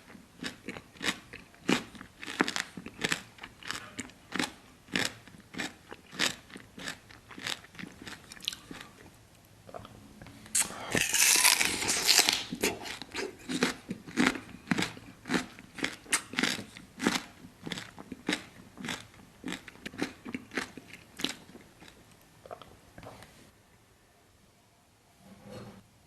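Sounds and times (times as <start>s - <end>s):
chewing crunches: 0.1s - 9.1s, 10.6s - 23.1s
biting crunchy watermelon: 10.6s - 21.9s.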